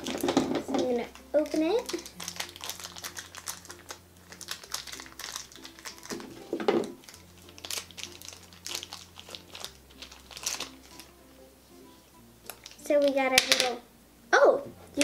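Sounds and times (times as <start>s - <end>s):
packaging rustle: 0.0s - 11.1s
packaging crinkling: 0.0s - 11.2s, 12.4s - 13.2s.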